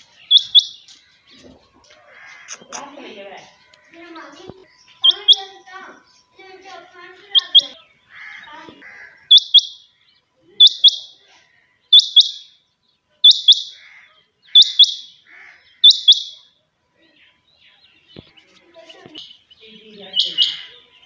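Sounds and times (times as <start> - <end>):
quail calling: 0.3 - 0.8, 2.0 - 3.0, 5.0 - 5.6, 7.3 - 9.8, 10.6 - 11.2, 11.9 - 12.5, 13.2 - 16.4, 20.1 - 20.8.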